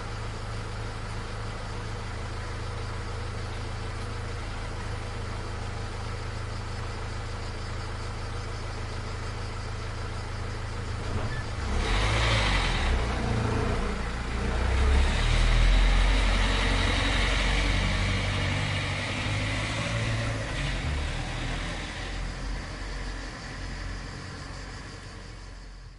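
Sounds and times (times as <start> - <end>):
car engine idling: 0.0 - 11.8, 20.3 - 25.9
car pulling away: 0.0 - 25.9.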